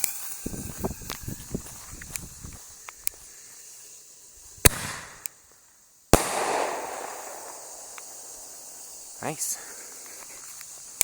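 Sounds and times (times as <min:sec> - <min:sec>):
firework shell bangs: 0:04.6 - 0:05.3, 0:06.2 - 0:09.1.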